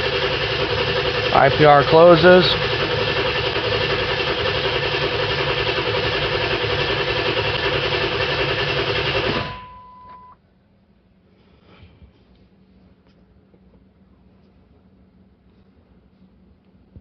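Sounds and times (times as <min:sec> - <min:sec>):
diesel engine cranking: 0:00.0 - 0:09.7.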